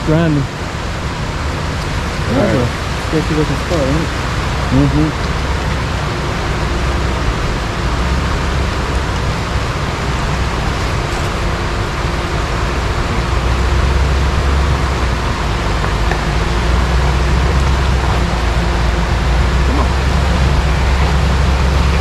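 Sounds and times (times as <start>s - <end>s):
truck engine low hum: 0.0s - 22.0s.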